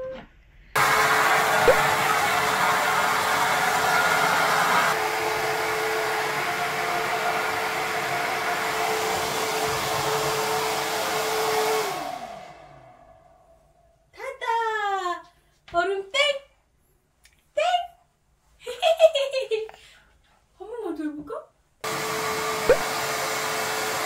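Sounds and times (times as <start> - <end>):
hair dryer motor spinning down: 0.8 - 13.6, 21.8 - 24.0
hair dryer running: 0.8 - 13.6, 21.8 - 24.0.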